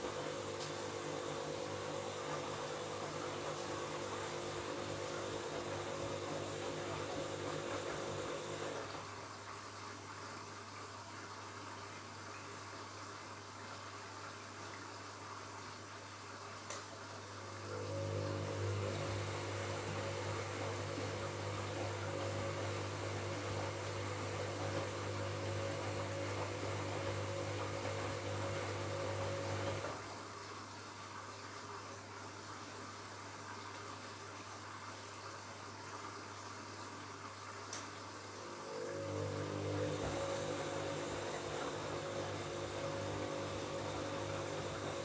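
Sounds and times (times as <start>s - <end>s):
washing machine electrical hum: 0.0s - 45.0s
water noise: 38.2s - 45.0s.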